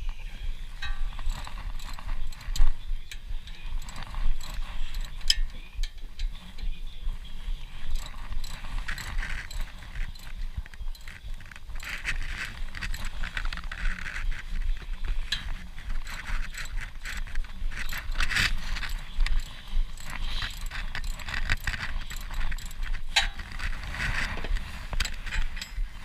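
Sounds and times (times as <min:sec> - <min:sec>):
wrench clicking and scraping on bolt: 0:00.8 - 0:06.8, 0:07.4 - 0:26.0.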